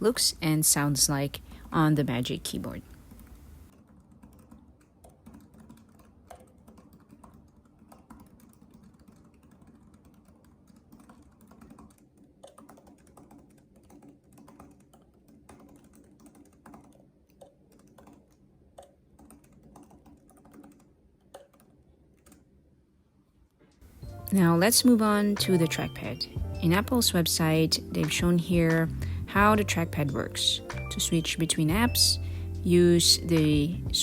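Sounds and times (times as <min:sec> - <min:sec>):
soft keyboard typing: 0:01.3 - 0:22.8, 0:23.8 - 0:34.0.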